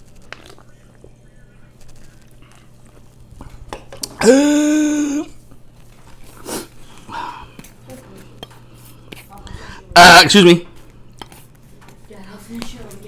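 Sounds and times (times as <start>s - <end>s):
chewing mouth noises: 0.0s - 4.2s
steady-pitched vocal sound: 4.2s - 5.3s.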